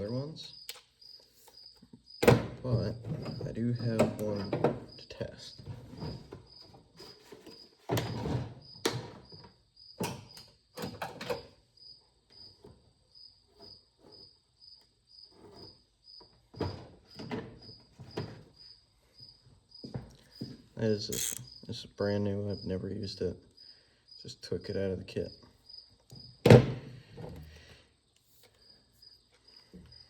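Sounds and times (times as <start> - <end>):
cricket chirping: 0.0 - 10.7, 11.6 - 26.4, 28.0 - 30.0
hand tools clicking and clunking: 2.2 - 4.9, 21.0 - 21.5.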